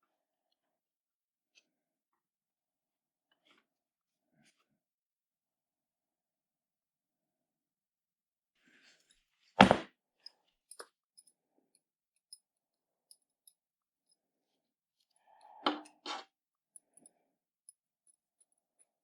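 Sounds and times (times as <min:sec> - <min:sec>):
tools knocking on workbench: 0:09.6 - 0:09.8.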